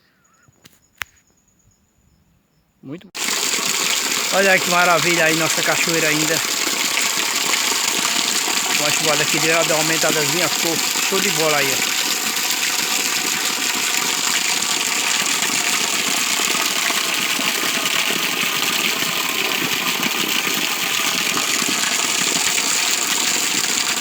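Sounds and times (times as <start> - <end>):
small waterfall roaring: 3.2 - 24.0.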